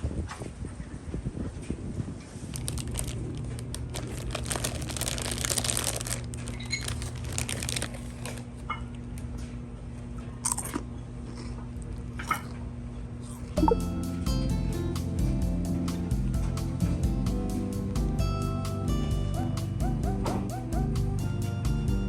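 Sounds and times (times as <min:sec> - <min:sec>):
crinkling and crunching handling: 0:02.1 - 0:12.6.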